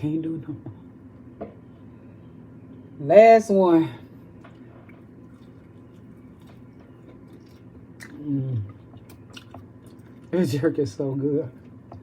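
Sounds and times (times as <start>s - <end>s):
person chewing: 4.4s - 10.4s
person humming mmm: 8.0s - 8.8s.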